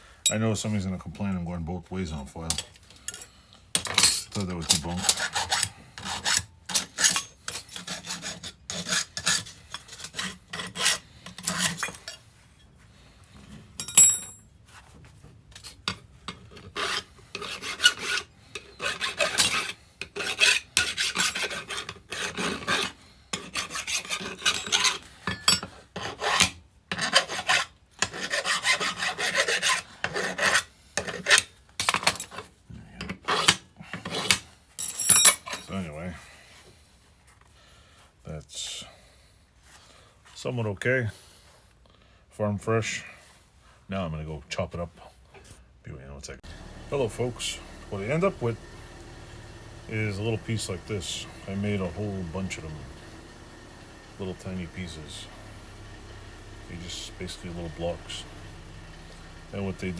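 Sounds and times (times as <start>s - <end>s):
hand file rasping on steel: 4.6s - 12.2s, 16.3s - 31.6s, 33.2s - 34.5s
ringing metallic clink: 13.8s - 14.4s.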